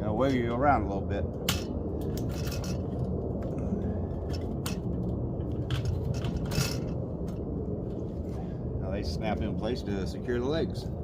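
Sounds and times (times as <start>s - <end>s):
grill leg clicking and knocking: 1.4s - 3.0s, 4.2s - 7.4s.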